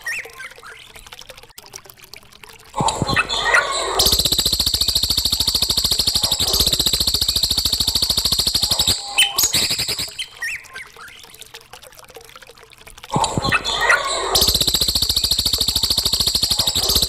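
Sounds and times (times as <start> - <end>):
songbird rattling trill: 4.0 - 10.6, 13.8 - 17.0.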